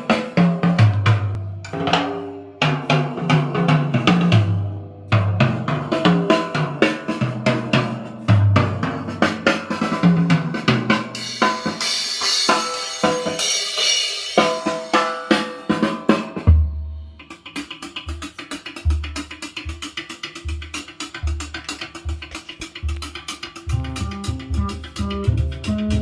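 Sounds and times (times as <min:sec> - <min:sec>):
drum kit: 0:00.0 - 0:26.0
quick hi-hat pattern: 0:02.6 - 0:16.2, 0:17.0 - 0:26.0
cymbal wash: 0:11.2 - 0:16.1
deep bass notes: 0:23.7 - 0:26.0.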